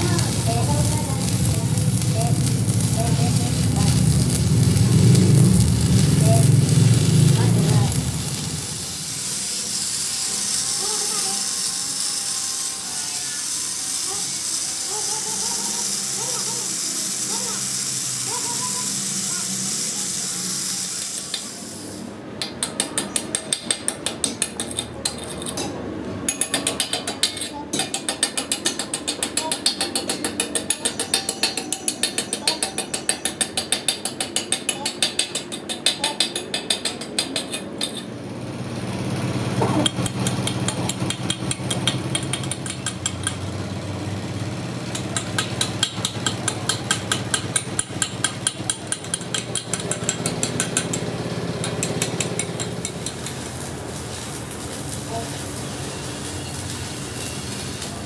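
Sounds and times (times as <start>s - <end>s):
hammer striking metal: 22.4s - 38.2s, 39.8s - 43.6s, 44.9s - 53.3s.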